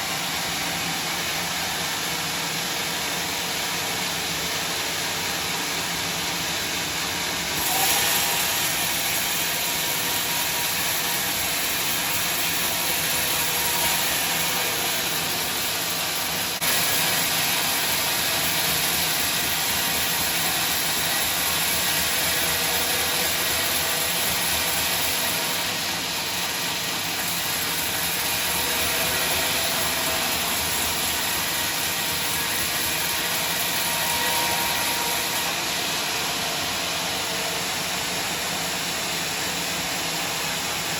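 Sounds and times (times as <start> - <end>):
sawmill machinery hissing: 0.0 - 40.9.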